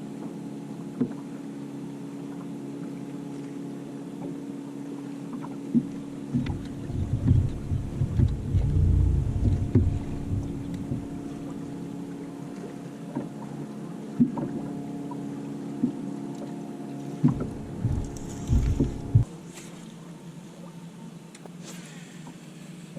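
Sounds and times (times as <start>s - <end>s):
low rumbling: 5.9s - 12.6s, 17.2s - 19.3s.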